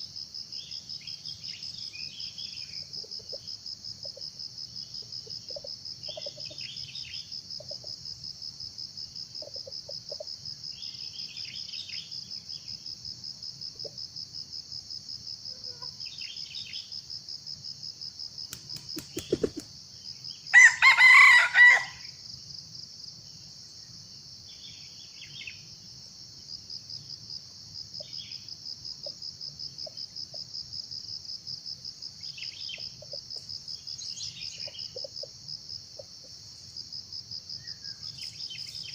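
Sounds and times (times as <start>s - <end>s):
insects trilling: 0.0s - 38.9s
rooster crowing: 20.5s - 22.1s.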